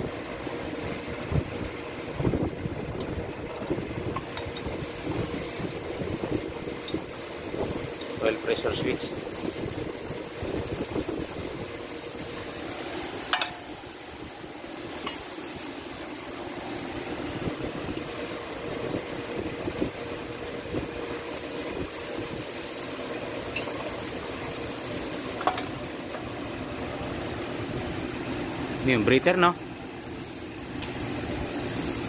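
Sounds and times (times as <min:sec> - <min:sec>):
steady mechanical hum: 0:00.0 - 0:32.0
metal tools clinking on engine parts: 0:23.5 - 0:23.8.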